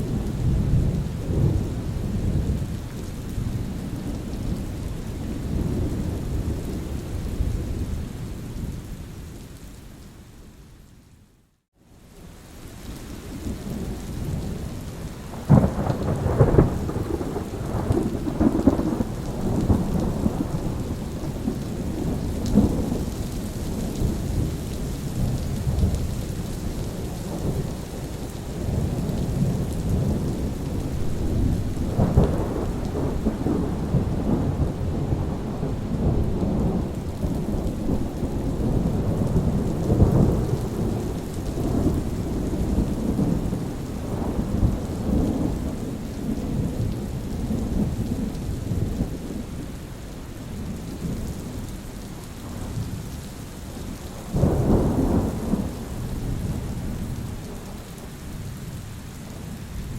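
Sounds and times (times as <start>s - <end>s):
steady rain falling: 0.0s - 59.9s
thunder rumbling: 15.3s - 49.6s, 53.7s - 58.5s.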